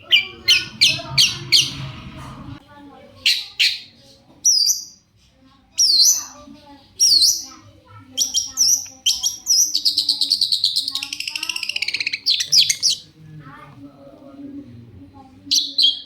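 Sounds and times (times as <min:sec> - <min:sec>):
shrike singing sharp calls: 0:00.0 - 0:02.2.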